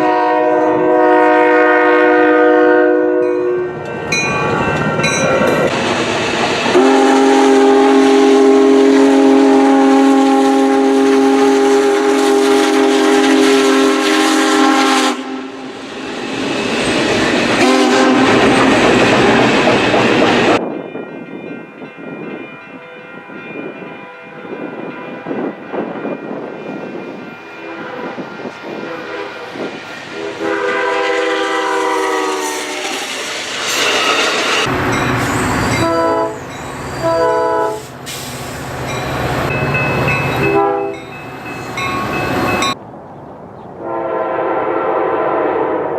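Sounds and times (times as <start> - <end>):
train horn blasts: 0.0 - 3.8, 6.7 - 15.8, 17.4 - 19.5, 27.5 - 33.1, 34.6 - 37.9, 39.6 - 41.2, 43.8 - 45.9
passing train rumble and rail clatter: 0.0 - 45.9.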